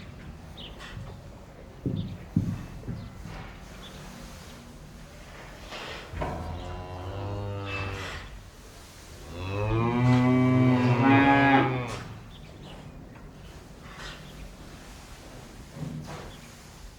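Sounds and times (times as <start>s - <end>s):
cows mooing: 6.2s - 8.3s, 9.3s - 12.2s.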